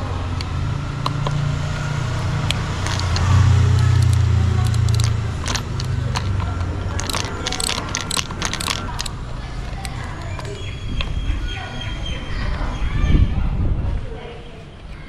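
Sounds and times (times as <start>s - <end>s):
low vehicle engine hum: 0.0s - 11.7s
plastic parts clicking: 2.4s - 10.6s.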